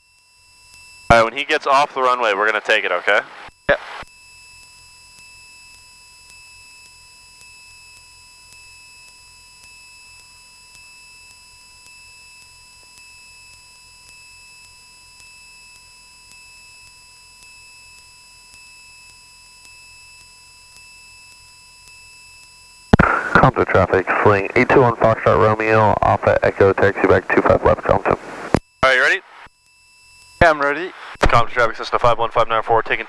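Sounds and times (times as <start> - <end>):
faint low hum: 23.0 - 29.5.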